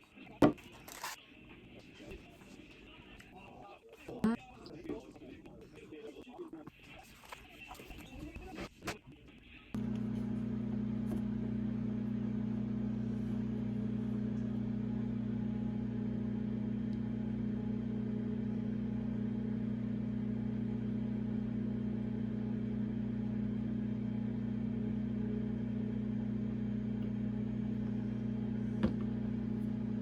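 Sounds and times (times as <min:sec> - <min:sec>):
kitchen appliance humming: 0:09.8 - 0:30.0.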